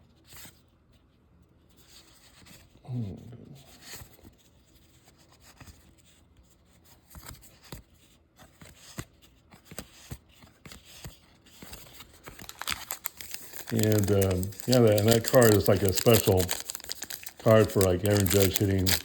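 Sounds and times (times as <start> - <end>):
cards sliding: 8.6 - 19.0
cards clicking: 11.6 - 19.0.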